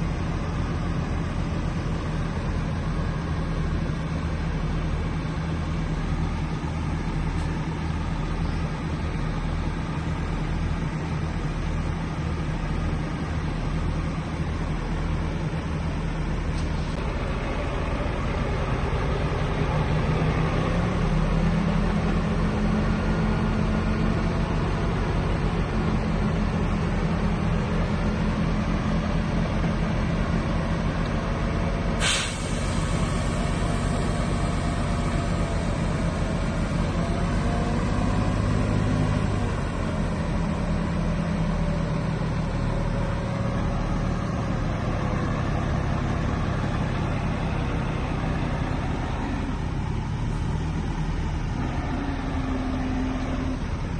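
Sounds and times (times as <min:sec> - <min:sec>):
heavy diesel engine running: 0:00.0 - 0:53.9.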